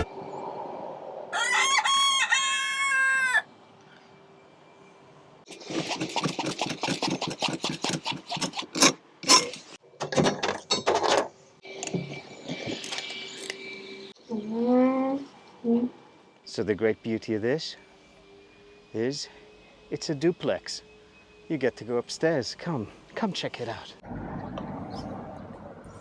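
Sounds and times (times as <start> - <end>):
rooster crowing: 1.3 - 3.5.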